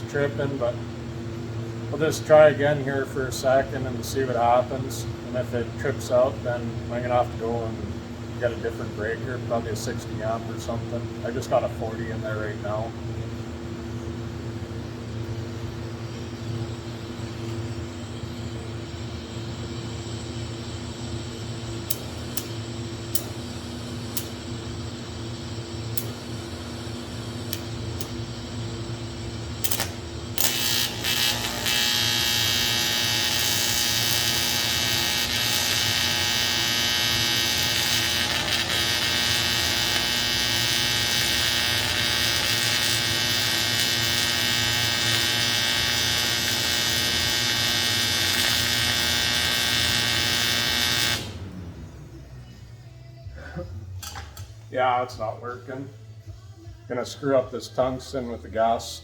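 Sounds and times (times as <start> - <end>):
welding machine humming: 15.3 - 52.4
welding arc buzzing: 15.7 - 52.4.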